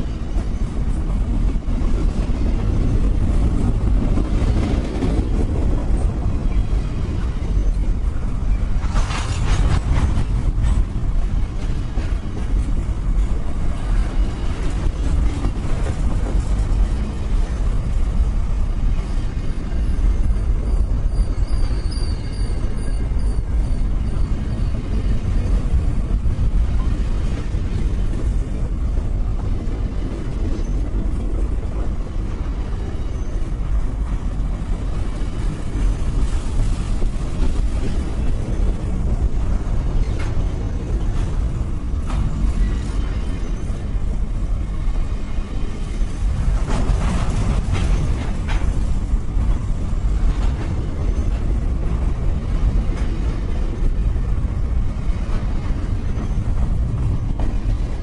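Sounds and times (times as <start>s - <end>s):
diesel locomotive rumbling: 0.0s - 58.0s
high wavering squeal: 19.2s - 24.9s.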